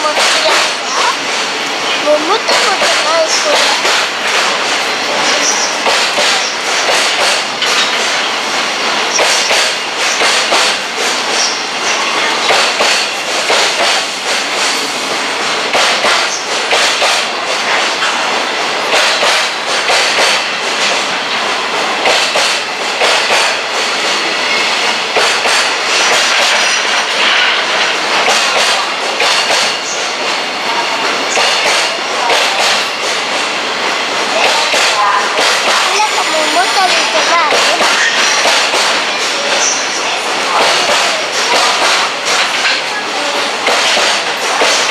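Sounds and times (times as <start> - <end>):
train wheels clacking on rails: 0.0 - 44.9.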